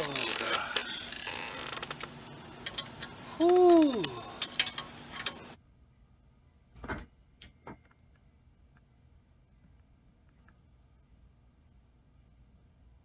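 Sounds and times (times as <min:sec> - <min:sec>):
light metallic clinks: 0:03.7 - 0:05.6.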